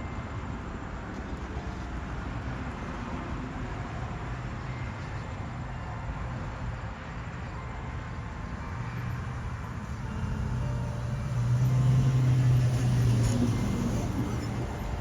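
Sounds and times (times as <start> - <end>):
motor vehicle engine passing: 9.2 - 15.0.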